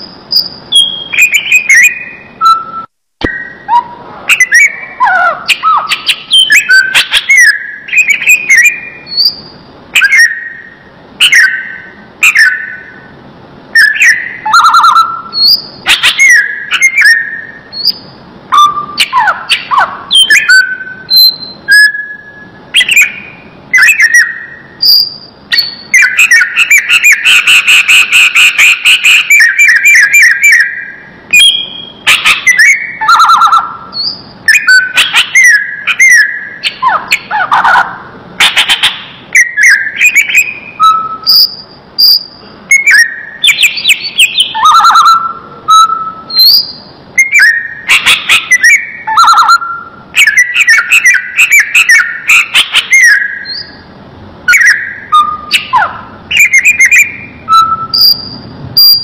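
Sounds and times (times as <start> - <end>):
bird singing whistled notes and trills: 0.0 - 59.0.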